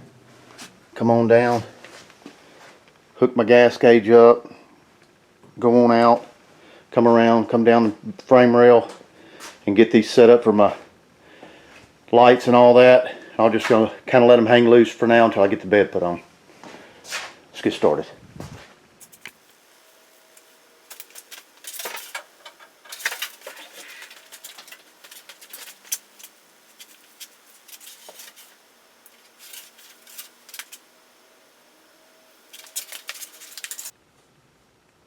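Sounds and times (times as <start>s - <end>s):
hands handling wiring harness: 19.0s - 31.2s, 32.3s - 33.9s.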